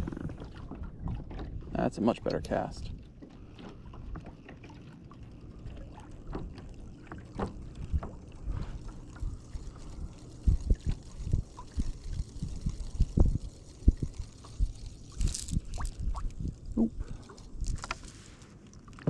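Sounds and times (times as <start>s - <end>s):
water slapping boat hull: 0.0s - 19.0s
gusty wind: 10.0s - 17.9s.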